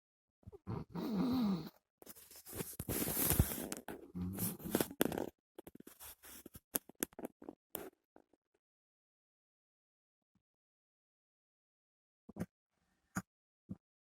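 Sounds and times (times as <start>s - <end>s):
rustling and scraping: 2.0s - 8.0s.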